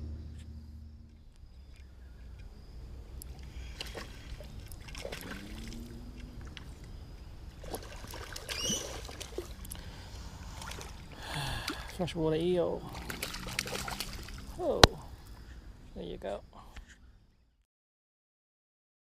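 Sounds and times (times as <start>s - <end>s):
water sloshing and dripping: 3.2s - 15.1s
water splash: 3.7s - 6.5s, 7.5s - 9.7s, 10.4s - 12.0s, 12.9s - 15.0s.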